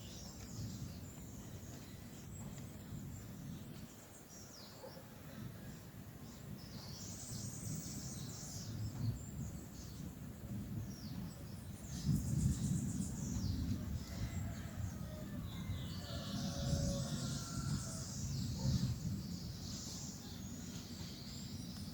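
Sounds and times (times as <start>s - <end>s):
birds chirping and trilling: 6.2s - 21.9s.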